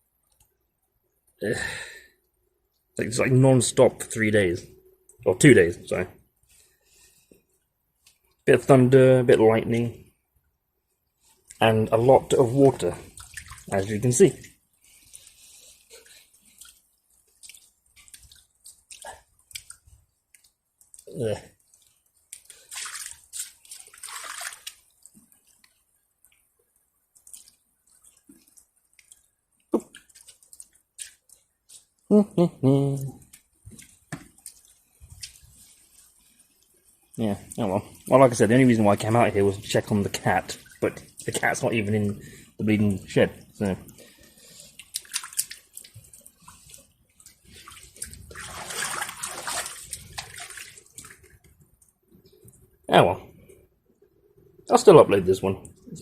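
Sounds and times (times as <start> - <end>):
water dripping: 0.1 - 4.3, 9.6 - 32.1, 32.9 - 56.0
bare feet splashing through water: 12.4 - 26.4, 27.1 - 31.9, 33.2 - 36.6, 37.5 - 42.1, 43.4 - 51.5.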